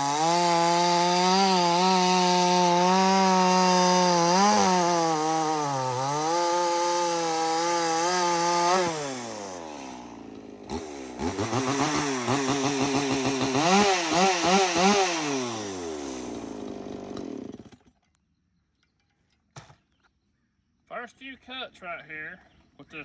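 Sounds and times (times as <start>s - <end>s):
chainsaw revving and idling: 0.0s - 18.0s.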